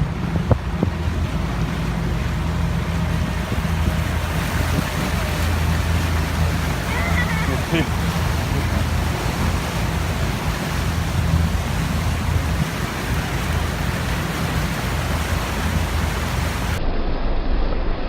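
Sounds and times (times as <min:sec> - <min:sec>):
wind rushing: 0:00.0 - 0:07.0
water rushing: 0:00.0 - 0:16.8
low engine drone: 0:00.0 - 0:18.0.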